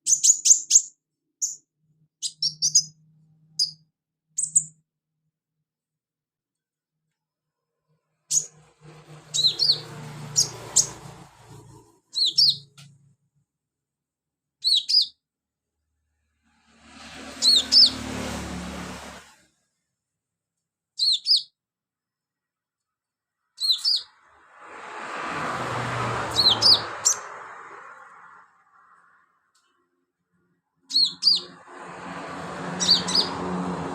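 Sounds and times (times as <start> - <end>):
bird singing high chirps: 0.0 - 4.8, 8.3 - 8.6, 9.3 - 11.0, 12.1 - 12.8, 14.6 - 15.2, 17.4 - 18.0, 21.0 - 21.6, 23.6 - 24.2, 26.3 - 27.3, 30.8 - 31.6, 32.8 - 33.4.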